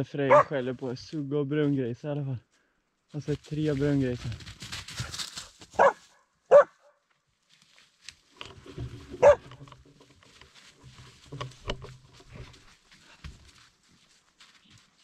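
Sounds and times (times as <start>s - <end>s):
dog barking: 0.3s - 0.6s, 5.8s - 7.0s, 9.2s - 9.4s.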